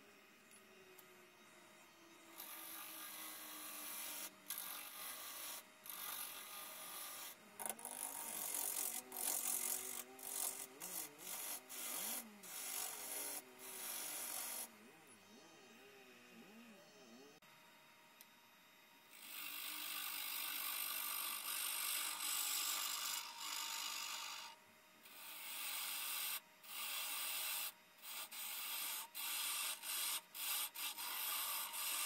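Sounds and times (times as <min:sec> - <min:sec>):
lathe gouge scraping wood: 0:02.4 - 0:14.7, 0:19.1 - 0:32.0.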